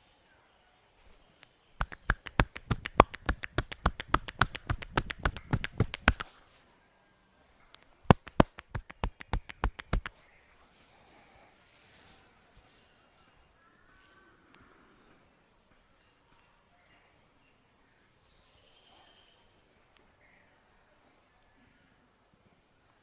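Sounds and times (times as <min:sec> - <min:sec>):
rapid hand slaps on head: 0:01.8 - 0:06.4, 0:08.1 - 0:10.2.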